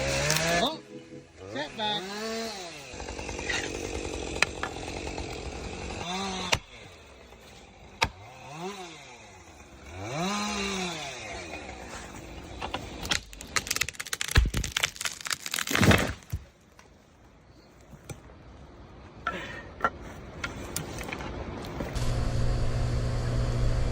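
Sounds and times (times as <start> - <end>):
chainsaw revving: 0.0 - 0.7, 1.6 - 13.0
sharp cracks: 12.4 - 16.8.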